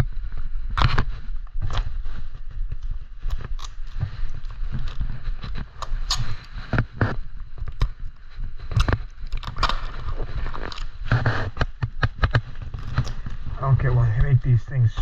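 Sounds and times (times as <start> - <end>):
packaging clicking and rustling: 8.8 - 11.2
low handling rumble: 13.1 - 15.0.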